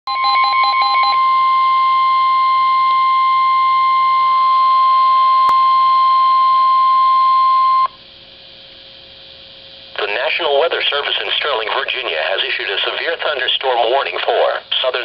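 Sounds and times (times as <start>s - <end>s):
loud steady alarm beep: 0.1s - 8.0s.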